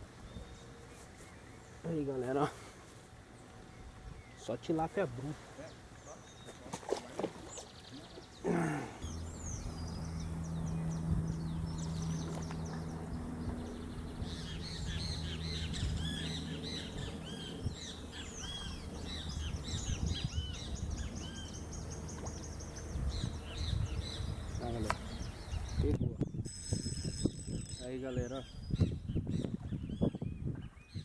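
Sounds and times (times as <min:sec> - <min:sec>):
small birds chirping: 0:07.4 - 0:26.4, 0:27.1 - 0:31.0
steady low hum: 0:07.7 - 0:25.8.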